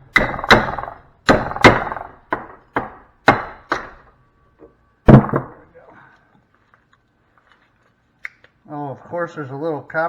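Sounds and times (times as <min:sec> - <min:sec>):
hammer striking metal: 0:00.0 - 0:04.2.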